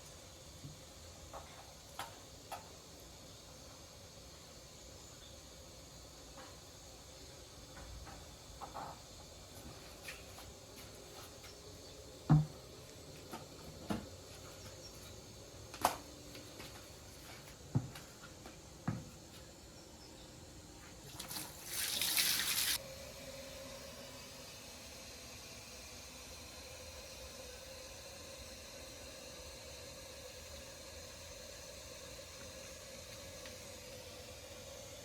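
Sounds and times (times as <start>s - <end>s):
rush of hissing water: 21.1s - 35.0s.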